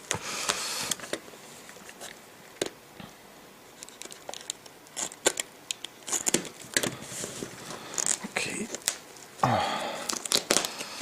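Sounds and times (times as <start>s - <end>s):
tape and cardboard tearing: 3.7s - 9.0s, 10.0s - 11.0s
cardboard crinkling: 3.8s - 9.3s, 10.0s - 11.0s.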